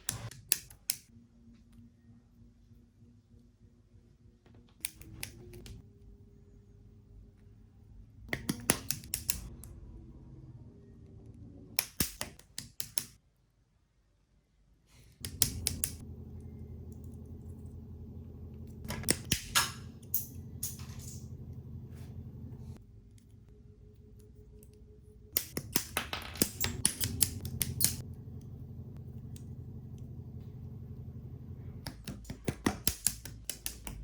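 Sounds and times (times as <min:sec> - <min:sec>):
faint low hum: 0:14.9 - 0:32.6.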